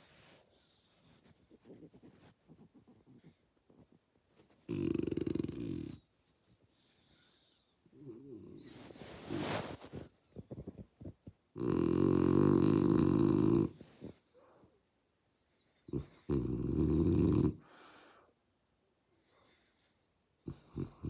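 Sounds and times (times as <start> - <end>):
dog snoring: 4.7 - 6.0, 10.5 - 14.1, 15.8 - 17.7, 20.4 - 21.0.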